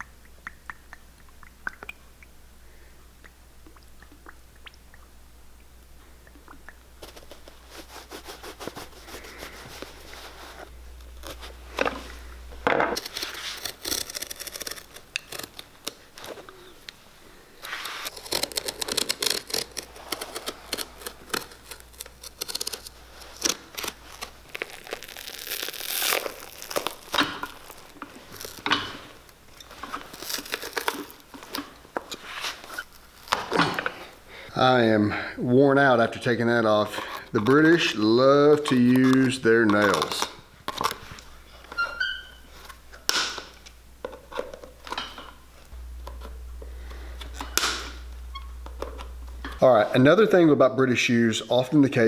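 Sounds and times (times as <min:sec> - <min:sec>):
leather sole tearing off shoe: 0:12.9 - 0:16.5, 0:17.6 - 0:28.8.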